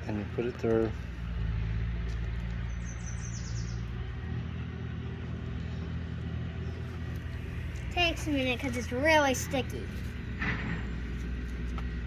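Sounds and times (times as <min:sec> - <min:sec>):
low mechanical hum: 0:00.0 - 0:12.0
bird chirps: 0:02.6 - 0:04.0.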